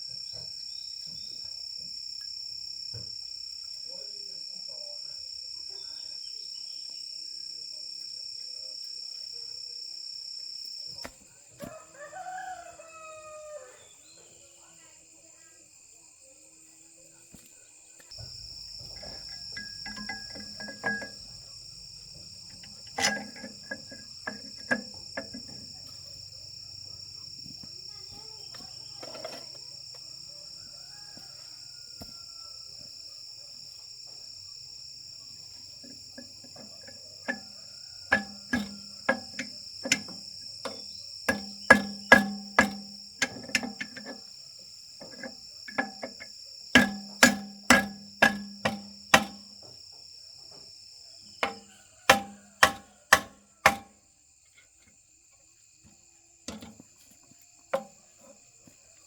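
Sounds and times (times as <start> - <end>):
hammer blows on metal: 18.8 - 21.4, 35.8 - 44.2, 45.0 - 49.6, 51.4 - 54.0
high insect buzz: 33.8 - 49.8.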